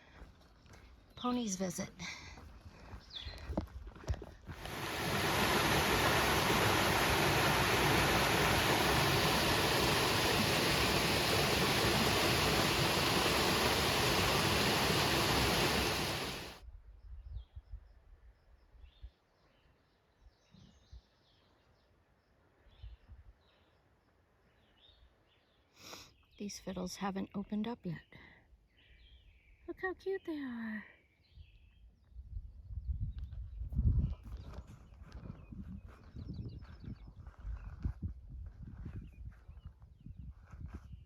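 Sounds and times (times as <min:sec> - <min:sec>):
loud steady rushing noise: 0:04.7 - 0:16.6.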